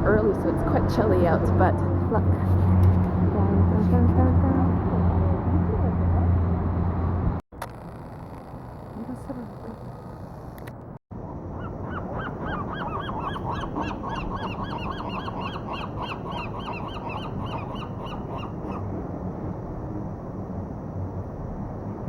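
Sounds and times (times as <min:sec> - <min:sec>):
high clear animal calls: 0:11.6 - 0:18.8.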